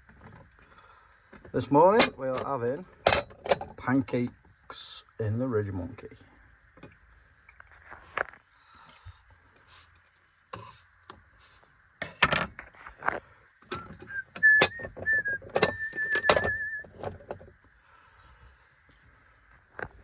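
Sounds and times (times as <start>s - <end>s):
person whistling: 13.8s - 16.9s.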